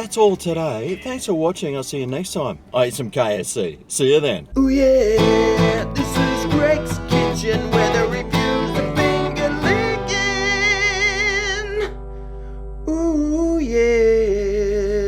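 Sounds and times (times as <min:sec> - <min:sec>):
held notes with vibrato: 0:04.5 - 0:13.8
strummed guitar: 0:04.7 - 0:14.2.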